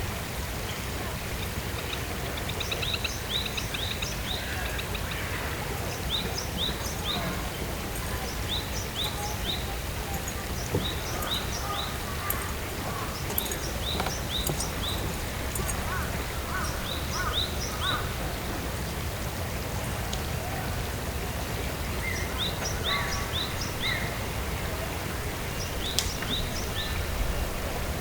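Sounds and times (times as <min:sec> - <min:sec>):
bird chirping: 0:06.0 - 0:18.0.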